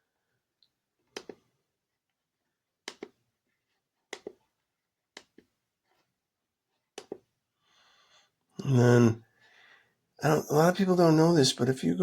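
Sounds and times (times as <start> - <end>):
device buttons clicking: 1.1 - 1.4, 2.9 - 3.2.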